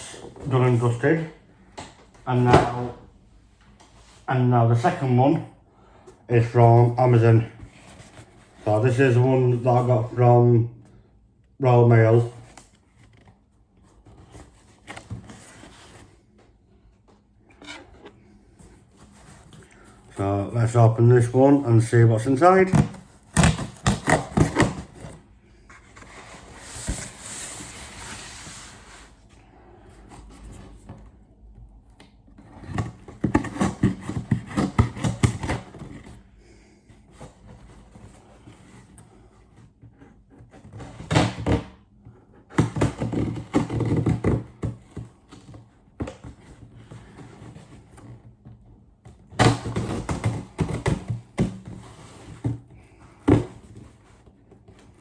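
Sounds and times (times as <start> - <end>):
cardboard parcel being unpacked: 11.9 - 16.3, 17.8 - 36.3, 42.5 - 55.0.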